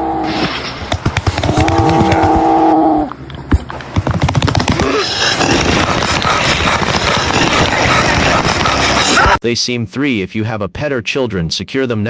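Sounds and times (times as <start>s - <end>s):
distorted crackling growl: 1.4s - 3.2s, 4.4s - 9.4s.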